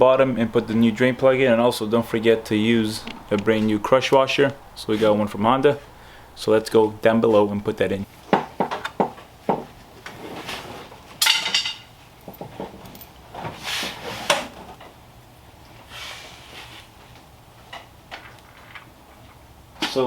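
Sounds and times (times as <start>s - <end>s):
metal scraping: 0.0s - 7.6s
soft rubbing: 0.3s - 8.0s
metal tool clinks and knocks: 11.2s - 13.2s.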